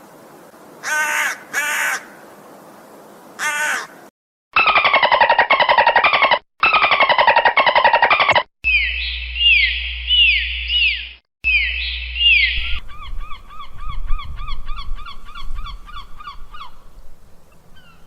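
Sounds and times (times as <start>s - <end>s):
lower arched bird calls: 4.6s - 18.0s.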